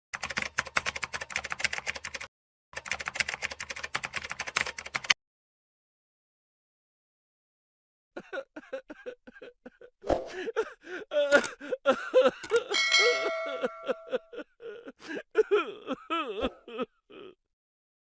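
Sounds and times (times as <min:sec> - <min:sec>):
ringing ding: 0:12.7 - 0:14.2
metal clang: 0:12.8 - 0:14.1.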